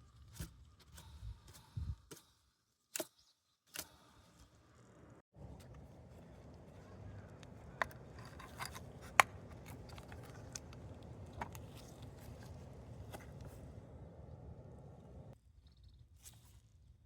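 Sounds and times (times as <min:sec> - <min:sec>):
blower fan motor whirring: 0:05.4 - 0:15.4.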